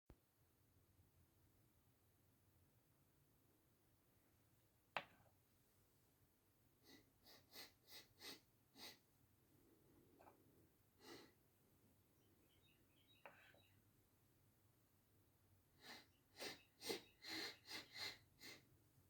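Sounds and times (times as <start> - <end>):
person sniffing: 6.8 - 9.0, 11.0 - 11.4, 15.8 - 18.6.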